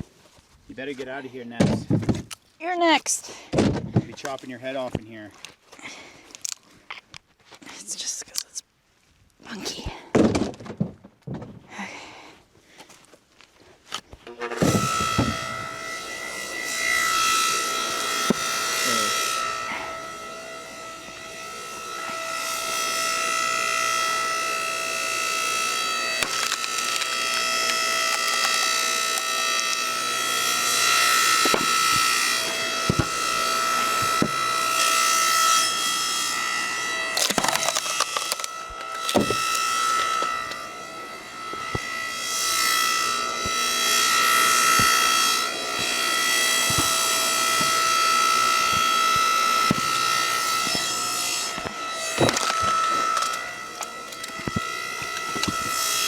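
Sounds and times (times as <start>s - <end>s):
log splitter whining: 14.0s - 56.0s
wood splitting cracks: 22.1s - 36.4s, 37.0s - 40.6s, 41.5s - 56.0s.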